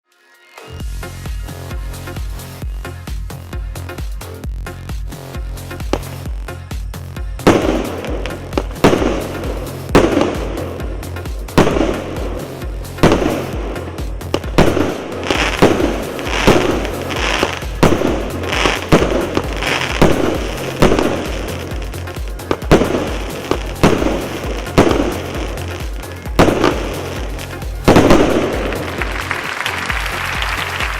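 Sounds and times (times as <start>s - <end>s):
background music: 0.0s - 30.9s
firework cake bangs: 7.4s - 30.0s.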